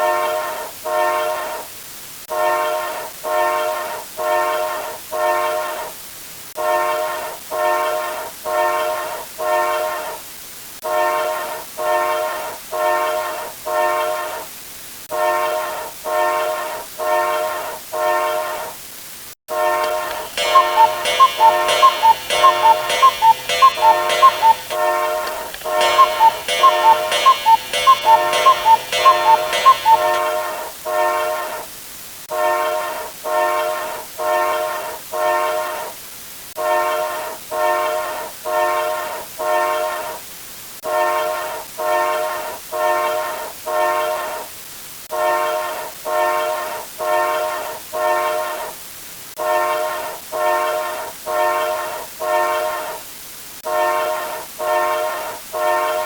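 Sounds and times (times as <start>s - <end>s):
train horn blasts: 6.6s - 10.1s, 15.1s - 18.7s, 19.5s - 31.6s, 32.3s - 35.9s, 36.6s - 40.2s, 45.1s - 48.7s, 49.4s - 53.0s, 53.6s - 56.0s
fast alarm beeping: 19.7s - 30.5s.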